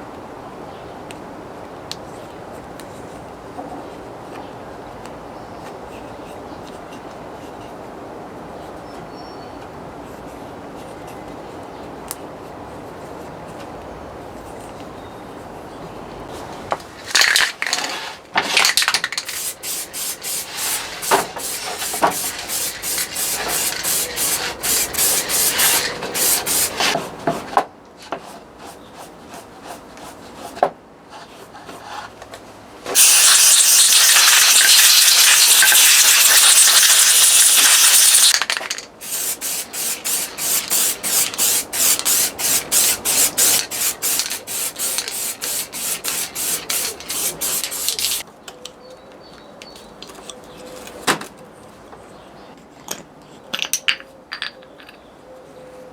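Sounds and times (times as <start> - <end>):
brush scrubbing a part: 19.0 - 27.0, 33.0 - 38.3, 39.0 - 48.2
hiss of spray or air: 19.1 - 27.0, 32.9 - 38.4, 39.0 - 48.2.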